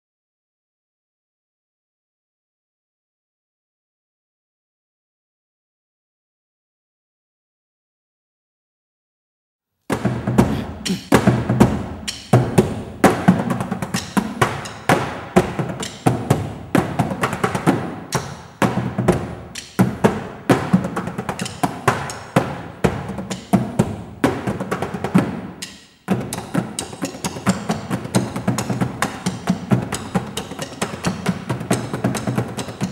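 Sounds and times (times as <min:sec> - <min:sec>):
percussion music: 0:09.9 - 0:32.9.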